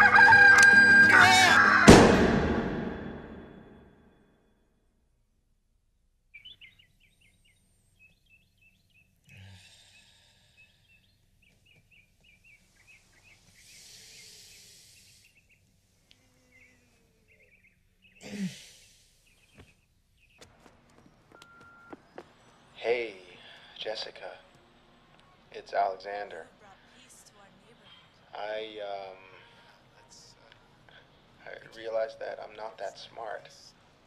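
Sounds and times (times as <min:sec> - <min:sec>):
faint outdoor ambience: 0:00.0 - 0:34.0
small birds chirping: 0:06.3 - 0:34.0
person sighing loudly: 0:18.2 - 0:19.0.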